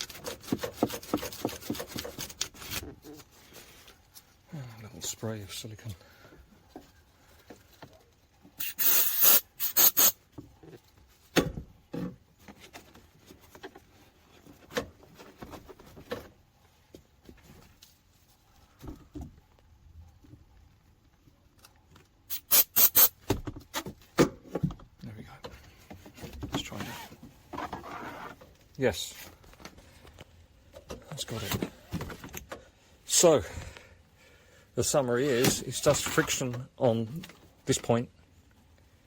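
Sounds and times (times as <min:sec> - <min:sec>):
aerosol spray hissing: 0:08.6 - 0:10.2, 0:22.3 - 0:23.1
short hissing strokes: 0:08.6 - 0:10.2, 0:22.3 - 0:23.2.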